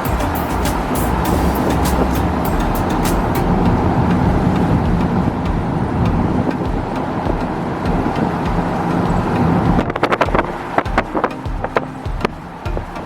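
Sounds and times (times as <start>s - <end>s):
road and engine noise: 0.0s - 13.0s.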